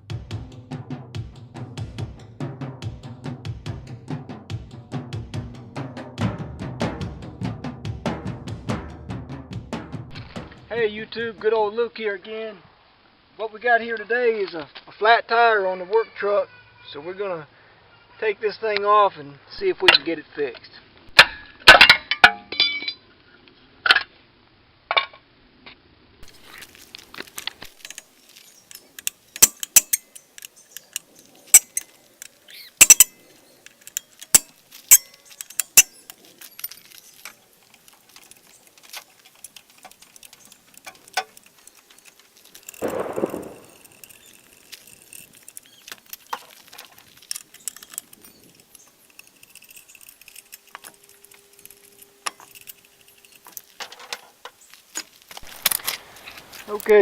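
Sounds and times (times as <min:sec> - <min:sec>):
metal tools clinking: 0:21.2 - 0:23.0, 0:26.2 - 0:56.8
sharp single clicks: 0:42.7 - 0:44.3.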